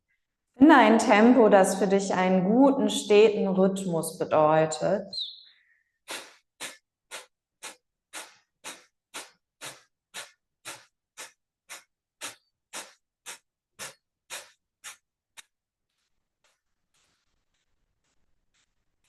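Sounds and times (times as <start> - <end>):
forceful nasal exhalations: 5.5 - 17.0.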